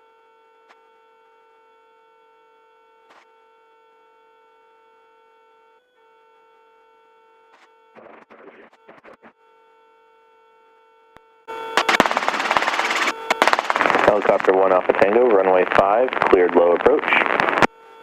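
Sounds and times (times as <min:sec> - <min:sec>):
short burst of noise: 0:11.8 - 0:17.7.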